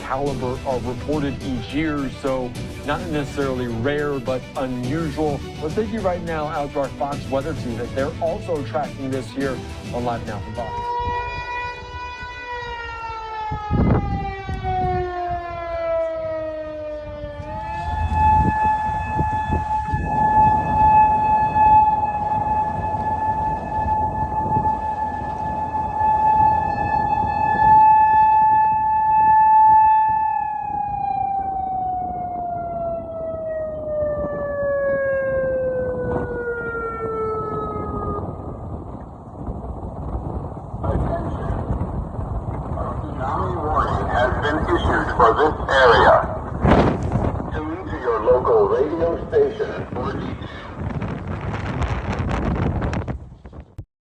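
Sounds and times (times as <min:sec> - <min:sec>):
warning siren wailing: 0:10.0 - 0:53.1
low rumbling noise: 0:17.0 - 0:53.8.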